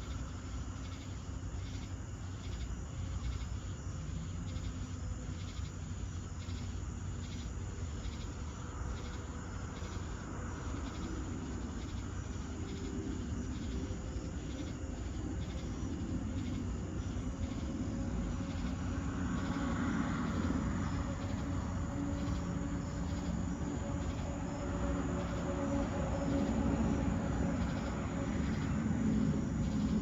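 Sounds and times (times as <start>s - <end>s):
insects chirping: 0.0s - 30.0s.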